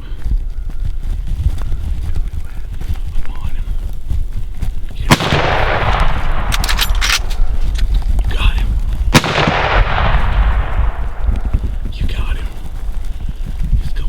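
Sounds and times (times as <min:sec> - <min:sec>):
rifle shots with echo: 0:05.0 - 0:12.7
sharp clicks: 0:05.0 - 0:13.0.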